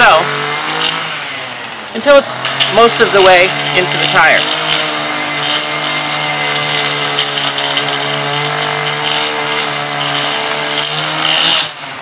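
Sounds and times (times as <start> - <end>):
motor humming: 0.0 - 12.0
hiss: 4.9 - 7.9, 8.5 - 12.0.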